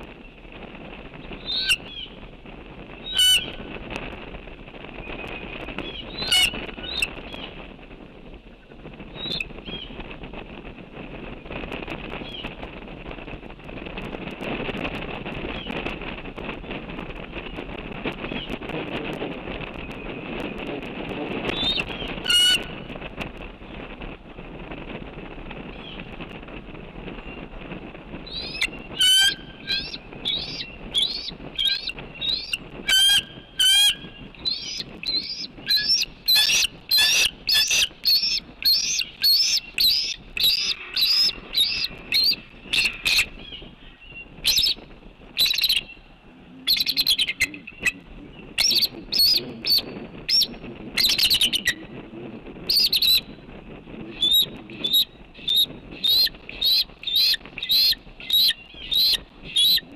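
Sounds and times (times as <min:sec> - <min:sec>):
eagle piping chirps: 0:28.3 - 0:43.7, 0:44.4 - 0:44.8, 0:45.4 - 0:46.0, 0:46.6 - 0:51.8, 0:52.7 - 0:53.3, 0:54.0 - 0:59.9.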